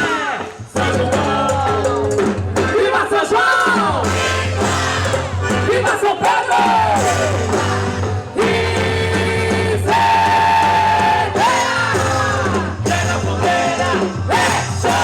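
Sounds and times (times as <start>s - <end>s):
band playing folk dance music: 0.0s - 15.0s.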